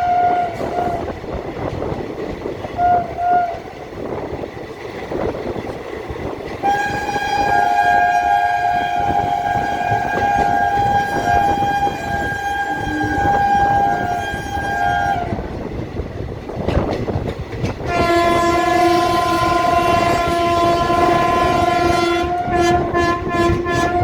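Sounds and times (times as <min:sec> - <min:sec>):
train horn blasts: 0:00.0 - 0:01.2, 0:02.7 - 0:03.7, 0:06.6 - 0:15.5, 0:17.8 - 0:24.0
moving train rumbling: 0:00.0 - 0:24.0.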